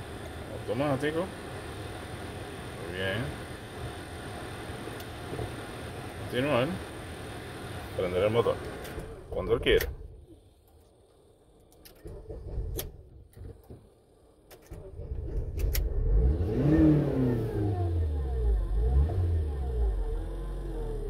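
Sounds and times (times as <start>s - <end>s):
car engine starting and revving: 14.7s - 21.0s.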